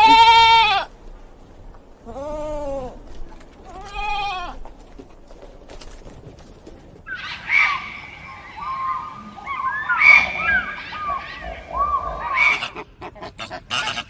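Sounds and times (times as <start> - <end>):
goat or sheep bleating: 0.0 - 0.9, 2.0 - 3.0, 3.7 - 4.6.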